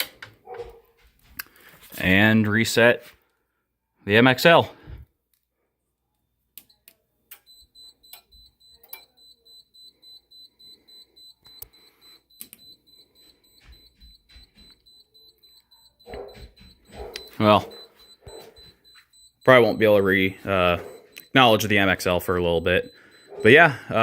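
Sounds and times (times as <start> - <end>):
rapid high-pitched beeping: 7.5 - 24.0
clicks: 12.4 - 12.8, 13.7 - 19.1.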